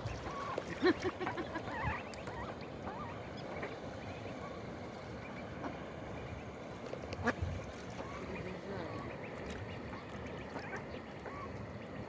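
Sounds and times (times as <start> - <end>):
ducklings peeping: 0.0 - 12.0.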